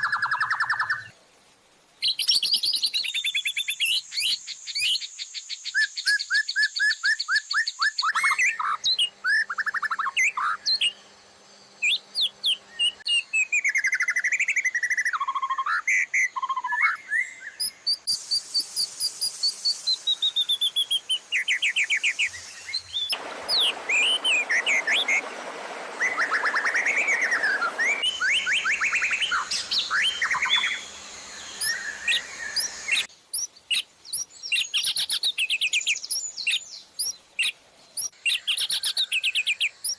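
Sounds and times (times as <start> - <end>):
songbird chip series: 8.0 - 39.9
bird trills: 11.8 - 39.9
bird sweeping whistles: 16.8 - 33.5.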